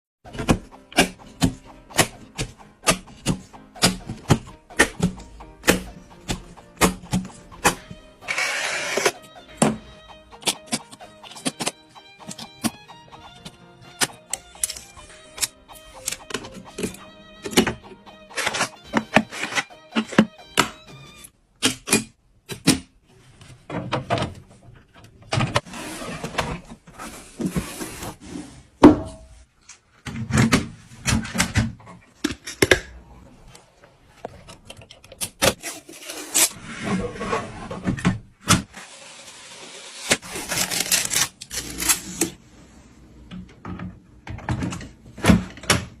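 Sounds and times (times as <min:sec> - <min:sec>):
computer parts knocking and clicking: 0:00.3 - 0:08.0, 0:09.4 - 0:20.8.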